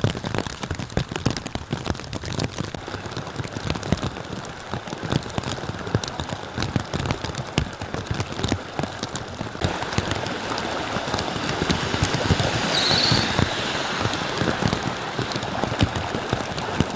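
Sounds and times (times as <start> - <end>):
rain drops ticking: 0.0 - 16.9
rushing water: 0.0 - 16.9
high chirp: 12.7 - 13.6.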